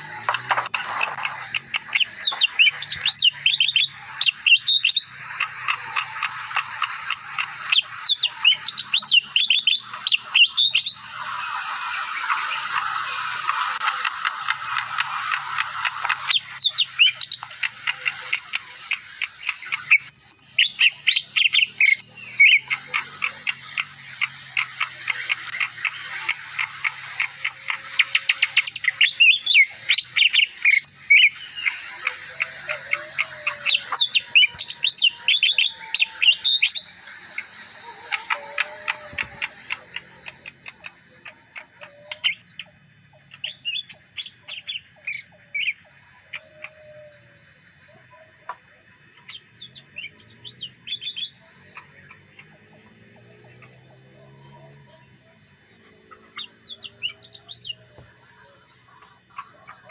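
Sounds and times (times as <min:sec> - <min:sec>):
bird singing chirps and whistles: 0:00.0 - 0:48.3, 0:49.2 - 0:59.9.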